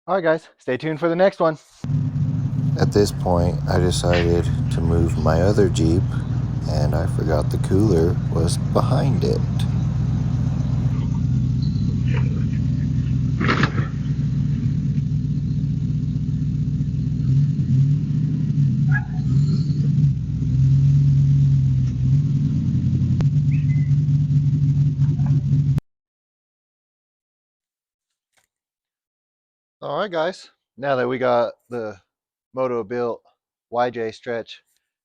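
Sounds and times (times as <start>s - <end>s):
engine rumbling while driving: 1.8s - 25.8s
short clatter: 13.4s - 14.2s.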